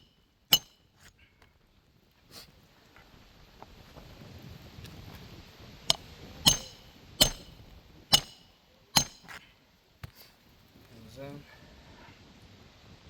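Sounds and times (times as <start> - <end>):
hammer driving roofing nails: 6.5 - 9.3.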